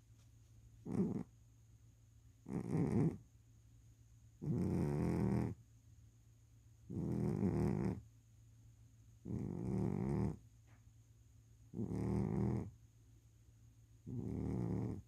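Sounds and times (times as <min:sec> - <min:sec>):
cat snoring: 0:00.9 - 0:01.3, 0:02.5 - 0:03.2, 0:04.4 - 0:05.6, 0:06.9 - 0:08.0, 0:09.2 - 0:10.4, 0:11.7 - 0:12.7, 0:14.1 - 0:15.0.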